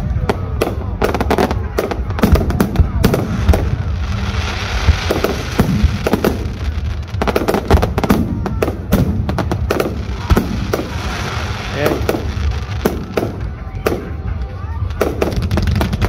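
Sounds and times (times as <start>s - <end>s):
fireworks bangs: 0.0s - 16.0s
fireworks crackling: 0.0s - 16.0s.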